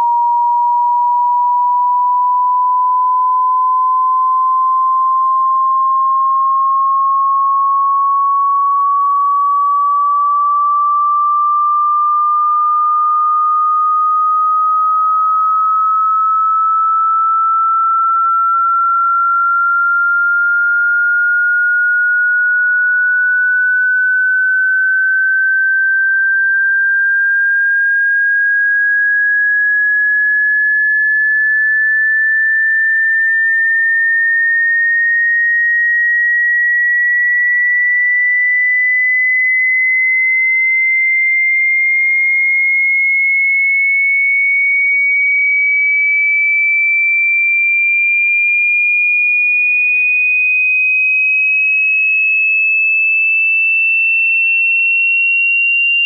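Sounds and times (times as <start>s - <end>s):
rising sine tone: 0.0s - 51.0s, 51.9s - 56.0s.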